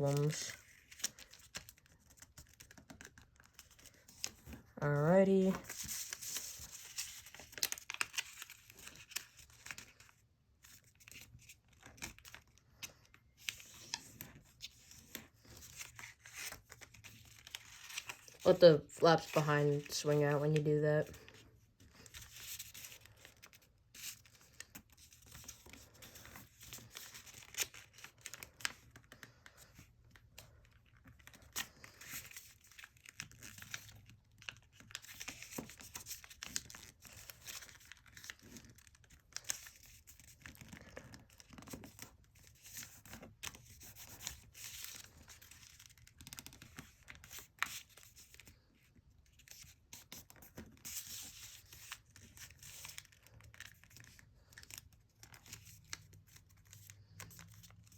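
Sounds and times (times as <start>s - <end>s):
paper fold crackling: 0.0s - 48.7s, 49.3s - 57.9s
paper crinkling and rustling: 0.0s - 57.9s.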